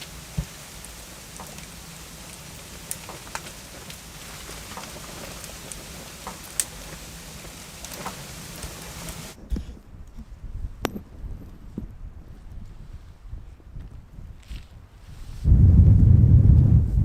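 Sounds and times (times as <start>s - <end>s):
rain-like patter with ticks: 0.0s - 9.4s
low thumps: 15.5s - 17.0s.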